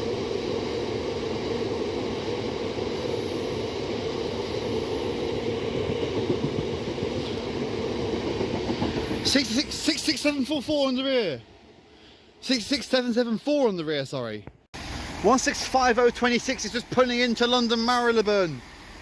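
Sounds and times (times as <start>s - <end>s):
train wheels on rails: 0.0s - 10.8s, 14.9s - 19.0s.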